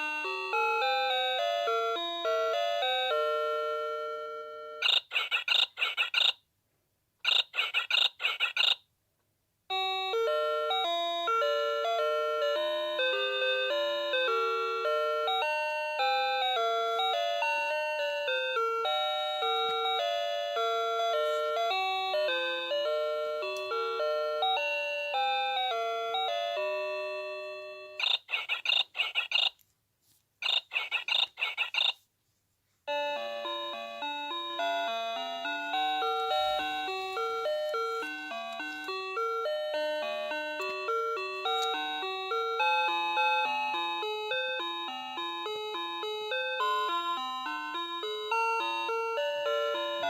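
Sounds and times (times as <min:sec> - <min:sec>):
electronic alarm melody: 0:00.0 - 0:06.4, 0:09.7 - 0:29.5, 0:32.9 - 0:50.0.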